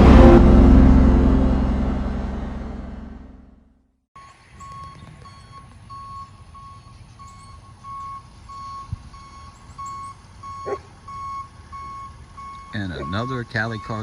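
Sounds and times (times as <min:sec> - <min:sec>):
low engine rumble: 0:00.0 - 0:03.6
truck reversing alarm beeping: 0:04.2 - 0:14.0.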